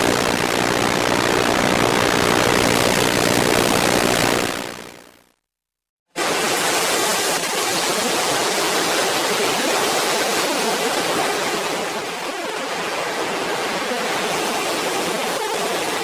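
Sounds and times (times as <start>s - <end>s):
steady rushing noise: 0.0s - 5.2s.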